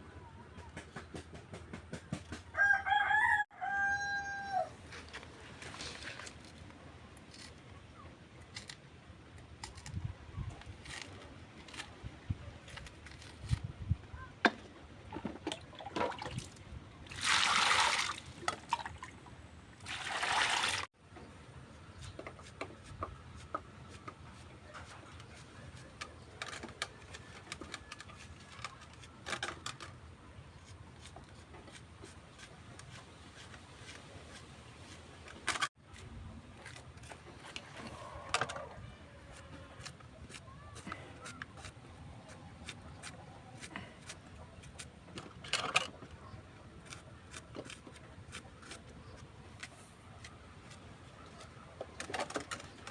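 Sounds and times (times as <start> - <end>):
water pouring: 17.1 - 19.2, 19.8 - 20.8.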